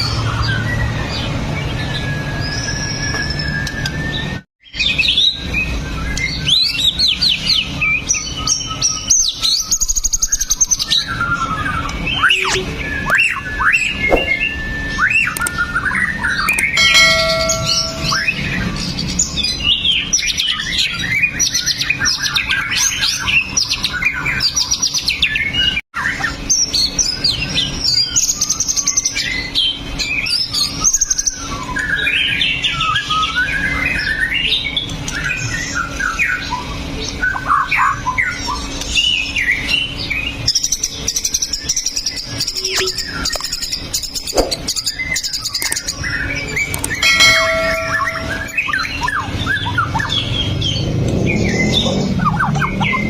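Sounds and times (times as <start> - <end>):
bird singing varied whistling song: 0.3 - 18.5.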